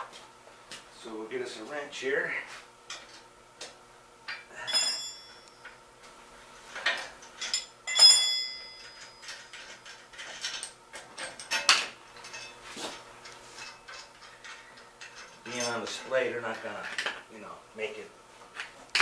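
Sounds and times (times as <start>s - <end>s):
hand tools clinking: 4.3s - 5.8s, 6.8s - 16.1s.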